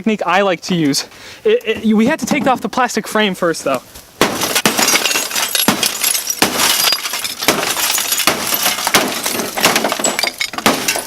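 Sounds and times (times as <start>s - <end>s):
glass breaking clinks: 4.4s - 11.0s.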